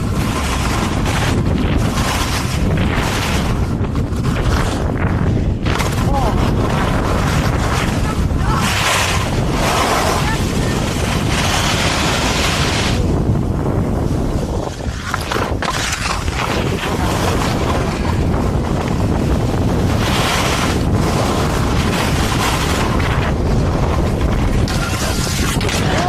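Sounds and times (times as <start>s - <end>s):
wind buffeting microphone: 0.0s - 26.0s
skis hissing over snow: 8.0s - 13.0s.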